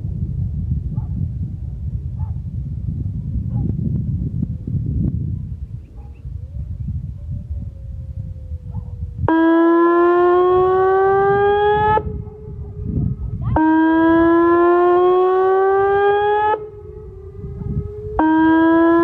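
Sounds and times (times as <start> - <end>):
siren rising tone: 6.3 - 19.0.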